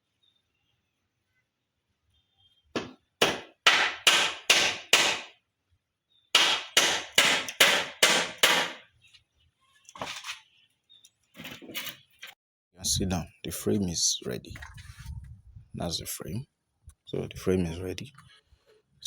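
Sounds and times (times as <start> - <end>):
hammer driving nails into timber: 2.8 - 5.4, 6.3 - 8.9.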